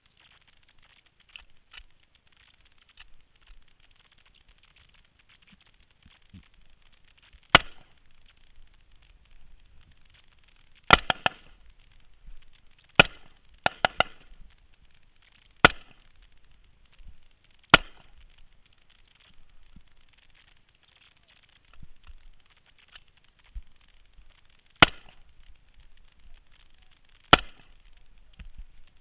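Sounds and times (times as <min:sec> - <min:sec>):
rifle shots: 0:10.9 - 0:11.6, 0:13.0 - 0:14.4, 0:15.6 - 0:16.1.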